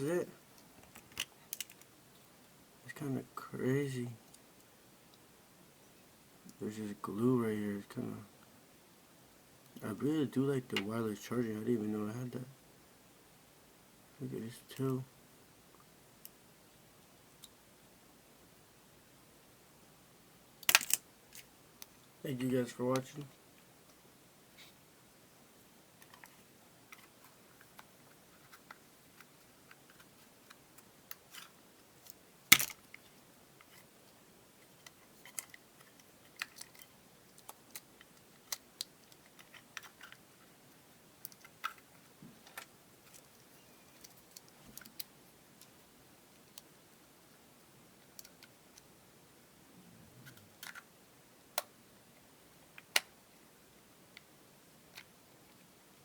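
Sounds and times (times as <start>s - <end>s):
small plastic parts clicking: 0.6s - 1.9s, 20.6s - 21.9s, 28.5s - 33.0s, 34.8s - 40.2s, 41.2s - 45.7s, 48.0s - 48.9s.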